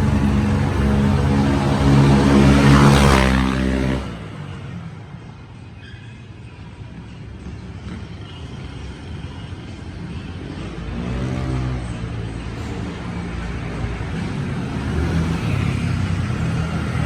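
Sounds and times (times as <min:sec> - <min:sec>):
scooter engine under throttle: 0:00.0 - 0:04.2
road noise: 0:00.0 - 0:17.0.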